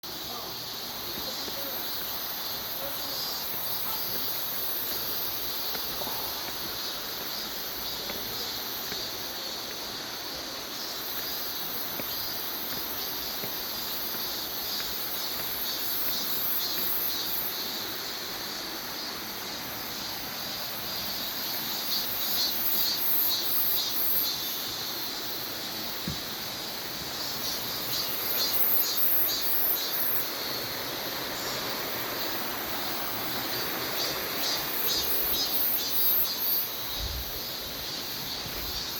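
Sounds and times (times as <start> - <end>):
insects calling in high pulses: 0.0 - 38.9
stream rushing: 29.4 - 36.0.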